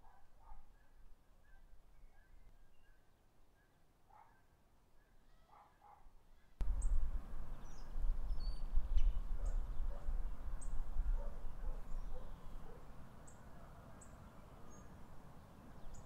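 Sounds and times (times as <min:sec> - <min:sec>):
wind buffeting microphone: 0:06.6 - 0:12.6
bird chirps: 0:06.7 - 0:15.0.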